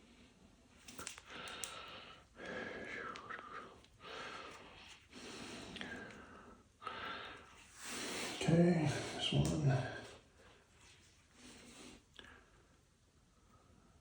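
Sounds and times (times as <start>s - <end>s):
person breathing close to microphone: 1.0s - 9.2s.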